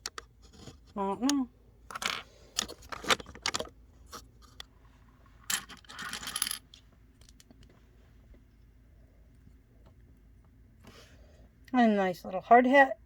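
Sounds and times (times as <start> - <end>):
loose pieces rattling: 1.9 - 4.6, 5.4 - 7.5.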